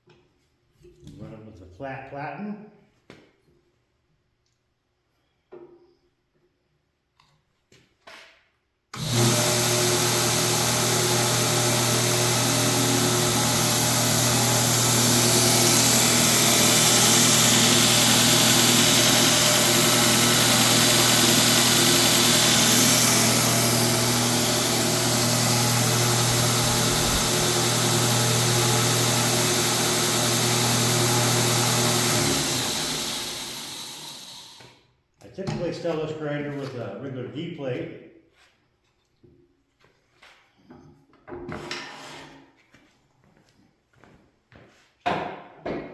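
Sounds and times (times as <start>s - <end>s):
belt grinder motor running: 9.0s - 34.6s.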